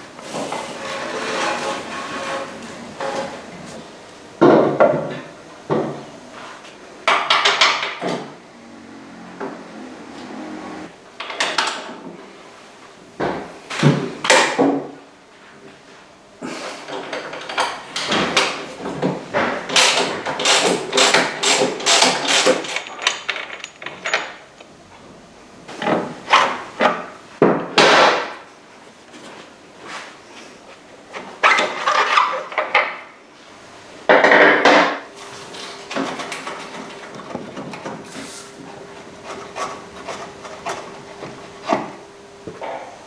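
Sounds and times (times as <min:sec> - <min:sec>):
tools knocking and scraping metal: 0:16.9 - 0:24.8.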